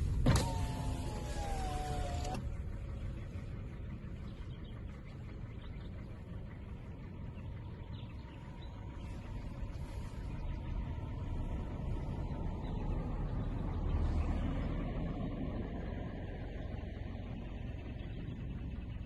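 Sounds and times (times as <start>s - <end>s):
low rumbling: 0.0s - 19.0s
faint bird chirps: 2.7s - 15.2s.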